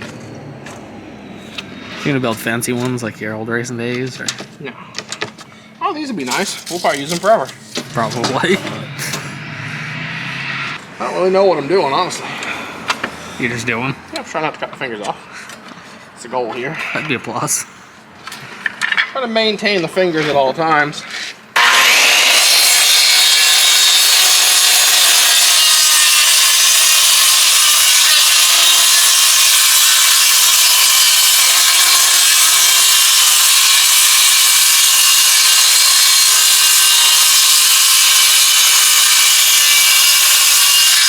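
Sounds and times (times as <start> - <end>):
power saw cutting wood: 6.2 - 13.9, 21.1 - 41.0.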